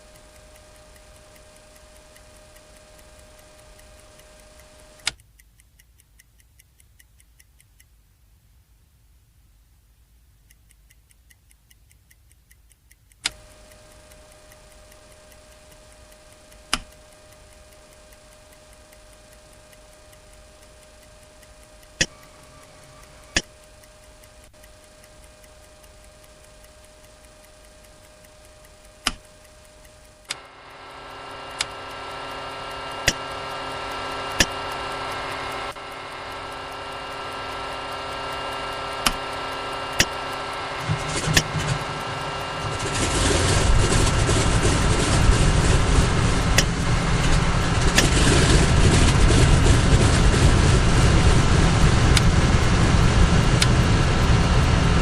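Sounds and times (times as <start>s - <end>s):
faint ticking: 0.0s - 54.9s
steady electrical hum: 0.0s - 55.0s
aircraft engine drone: 13.3s - 55.0s
switch clicks: 16.5s - 26.2s, 28.7s - 30.4s, 32.9s - 33.5s, 34.3s - 34.8s, 39.0s - 42.5s.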